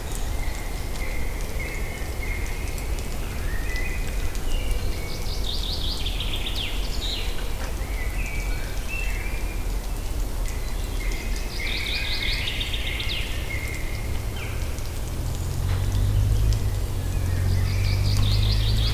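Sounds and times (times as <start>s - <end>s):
songbirds chirping and trilling: 10.6s - 18.9s.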